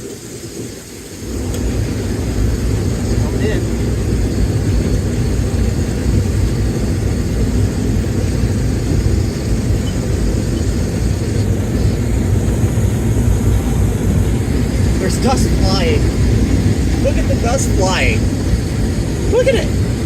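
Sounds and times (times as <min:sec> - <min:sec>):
combine harvester rumbling: 0:00.0 - 0:20.0.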